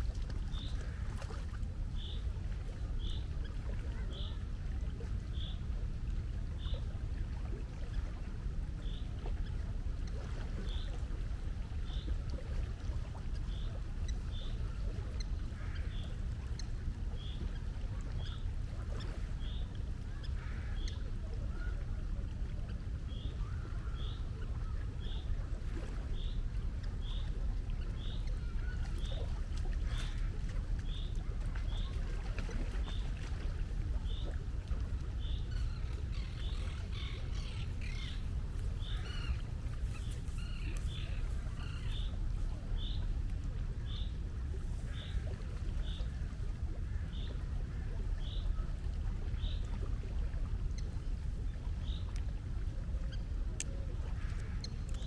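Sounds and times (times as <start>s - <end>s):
sea water rumbling: 0.0s - 55.0s
faint calls: 35.1s - 43.1s.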